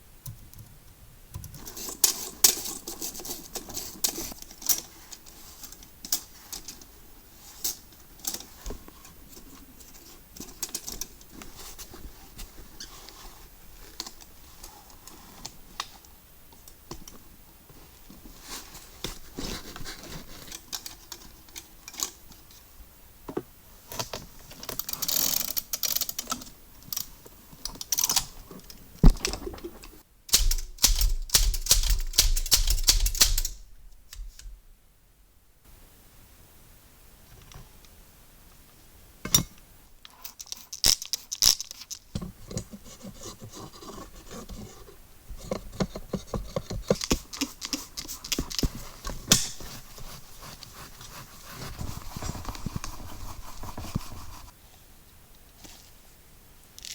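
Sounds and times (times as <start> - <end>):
typewriter parts clicking: 30.3 - 33.6.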